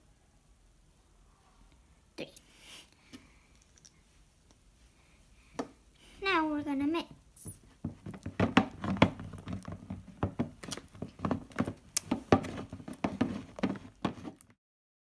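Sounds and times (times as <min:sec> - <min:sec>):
spatula tapping bowl: 0:07.4 - 0:14.4.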